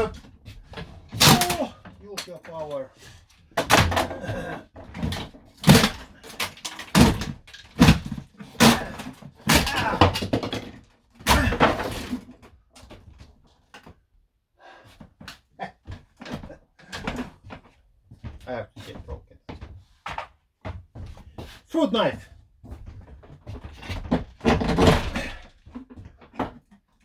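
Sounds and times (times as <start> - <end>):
thumps bangs and cracking: 0.0 - 2.8, 3.5 - 12.4, 23.3 - 26.6.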